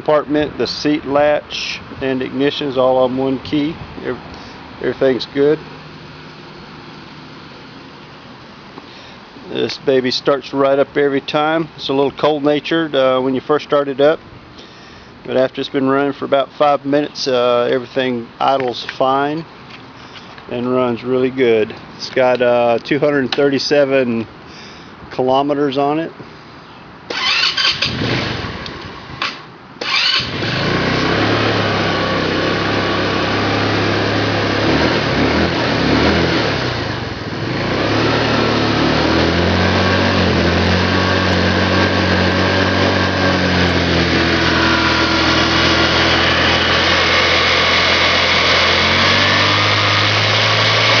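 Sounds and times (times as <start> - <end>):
scooter engine starting: 27.1 - 51.0.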